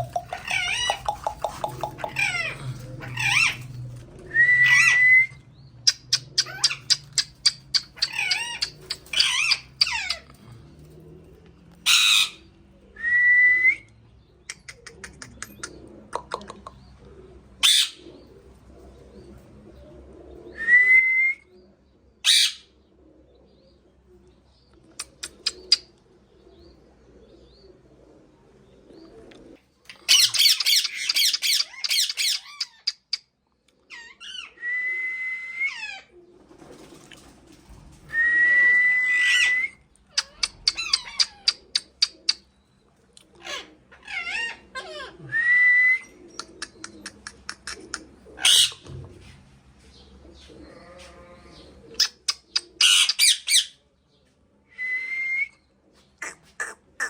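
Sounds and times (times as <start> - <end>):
parrot clicking chatter: 0.0 - 2.6
parrot squawks: 0.0 - 3.6, 17.6 - 18.0, 22.2 - 22.6, 48.4 - 48.8, 52.8 - 53.8
parrot rising whistles: 4.3 - 5.4, 38.1 - 39.8.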